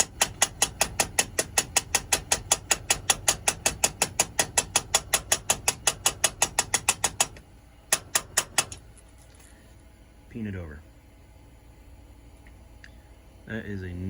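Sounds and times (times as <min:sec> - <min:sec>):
hammer tapping on rivet: 0:00.0 - 0:08.8.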